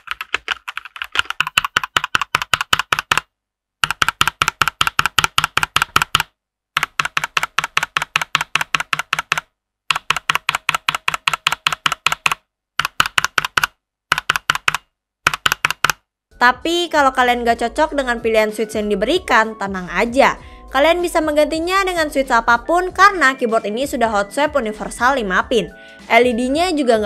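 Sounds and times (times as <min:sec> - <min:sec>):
fast mechanical keyboard typing: 0:00.0 - 0:16.0.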